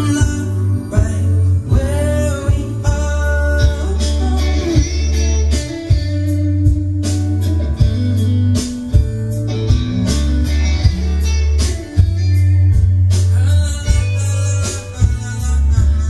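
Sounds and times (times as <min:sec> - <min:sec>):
guitar-led instrumental music: 0:00.0 - 0:16.0
heavy sustained bass: 0:00.0 - 0:16.0
drum hits: 0:04.8 - 0:16.0.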